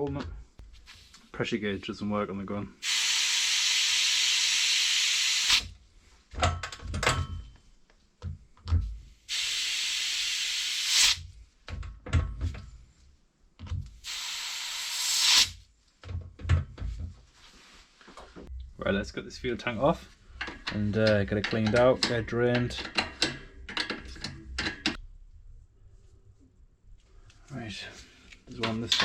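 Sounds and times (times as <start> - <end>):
compressed air hissing into tyre: 2.8 - 5.7, 9.3 - 11.3, 14.0 - 15.6.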